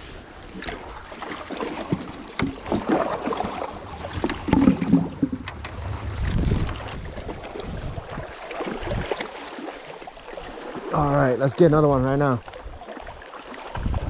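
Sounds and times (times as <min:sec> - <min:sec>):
water noise: 0:00.0 - 0:14.0
wind on microphone: 0:02.6 - 0:09.3, 0:13.7 - 0:14.0.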